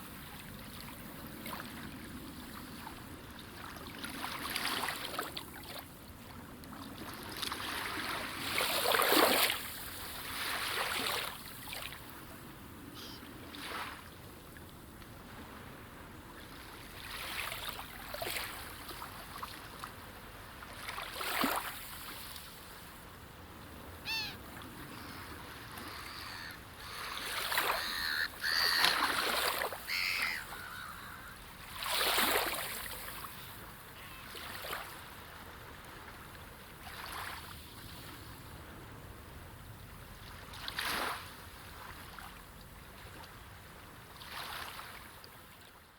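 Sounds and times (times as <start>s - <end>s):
small waves washing in: 0.0s - 39.3s, 40.0s - 45.7s
bird calls: 13.0s - 13.3s, 24.0s - 31.5s.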